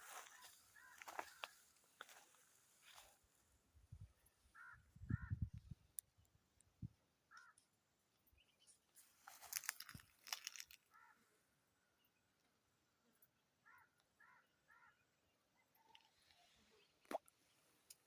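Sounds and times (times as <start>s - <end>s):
harsh bird calls: 0.0s - 1.6s
rustling and crackling: 9.0s - 10.8s.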